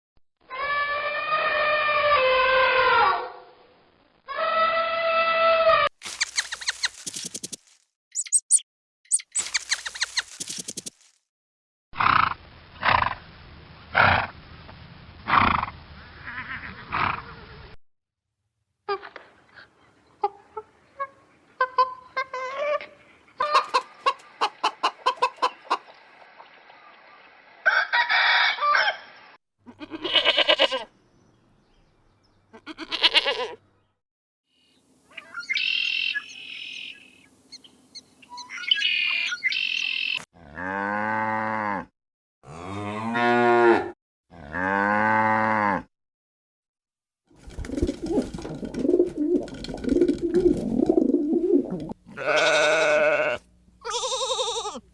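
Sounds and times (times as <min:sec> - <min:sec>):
chickens clucking: 0:21.6 - 0:26.2
rooster crowing: 0:27.6 - 0:29.0
cow mooing: 0:52.1 - 0:54.8.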